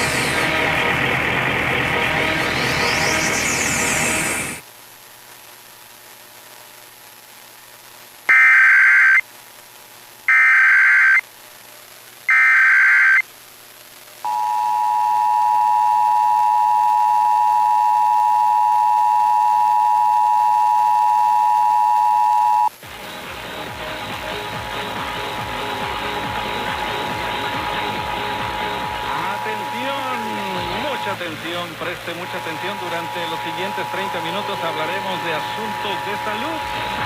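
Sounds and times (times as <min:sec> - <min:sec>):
digital data bursts: 0:08.3 - 0:09.2, 0:10.3 - 0:11.2, 0:12.3 - 0:13.2, 0:24.4 - 0:37.0
two-tone attention signal: 0:14.3 - 0:22.7, 0:29.0 - 0:31.2, 0:32.1 - 0:37.0.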